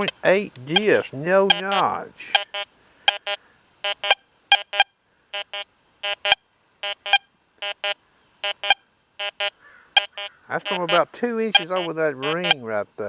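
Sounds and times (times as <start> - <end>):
metal detector double beeps: 0.0 - 12.6.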